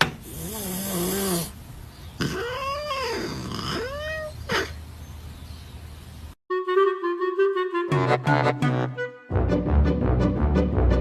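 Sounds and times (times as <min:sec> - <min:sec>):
cat meowing: 0:02.3 - 0:04.7.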